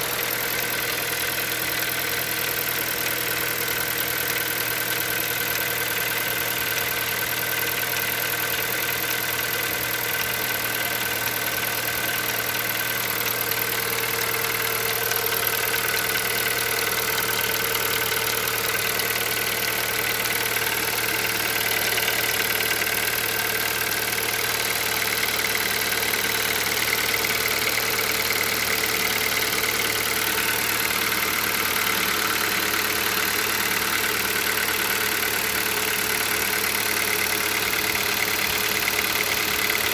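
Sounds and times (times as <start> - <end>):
car engine idling: 0.0 - 39.9
engine knocking: 0.0 - 39.9.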